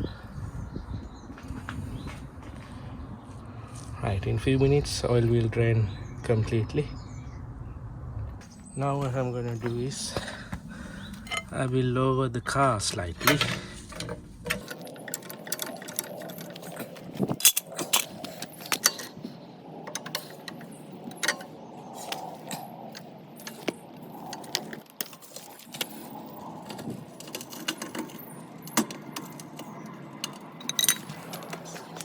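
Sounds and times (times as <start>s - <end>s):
car jack clicking and rattling: 13.2s - 32.0s.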